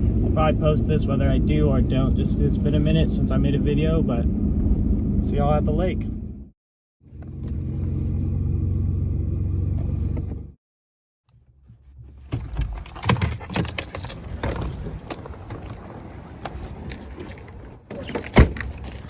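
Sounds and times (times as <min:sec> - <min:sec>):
knocks and clatter: 0:11.6 - 0:19.0.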